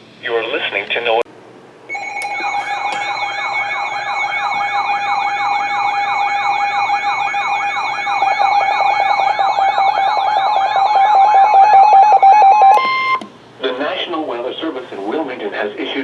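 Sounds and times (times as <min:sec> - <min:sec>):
electronic siren alarm warbling: 0:01.9 - 0:13.2.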